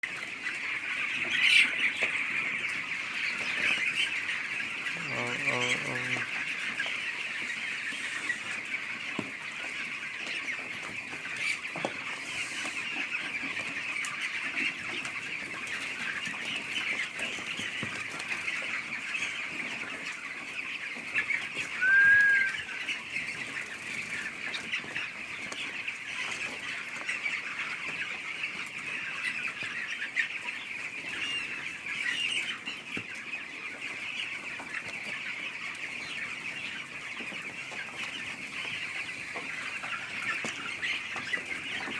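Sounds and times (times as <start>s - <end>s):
chicks peeping in chorus: 0.0s - 41.9s
loud short chick call: 21.8s - 22.8s.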